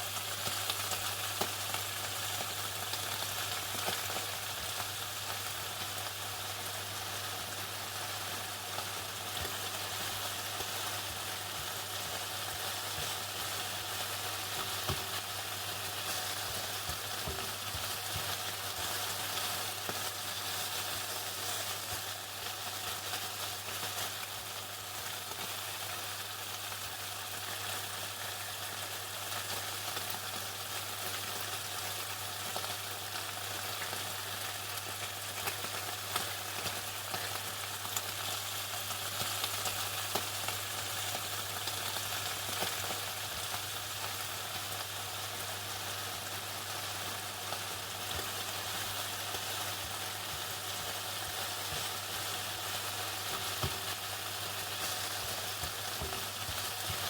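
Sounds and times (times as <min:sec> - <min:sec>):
chicken sizzling in oil: 0:00.0 - 0:57.0.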